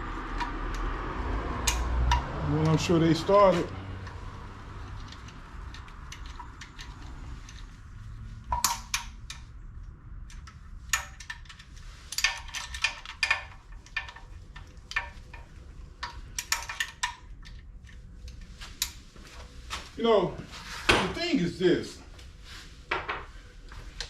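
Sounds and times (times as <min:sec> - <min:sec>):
wrench clicking and clinking: 0:08.5 - 0:09.5, 0:16.0 - 0:17.6.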